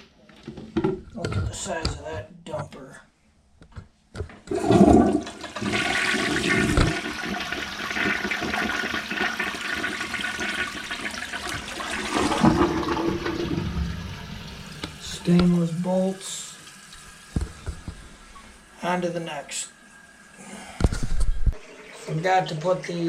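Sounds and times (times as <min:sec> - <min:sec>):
water rushing into toilet bowl: 0:04.4 - 0:23.0
toilet flush clunk: 0:04.5 - 0:15.7.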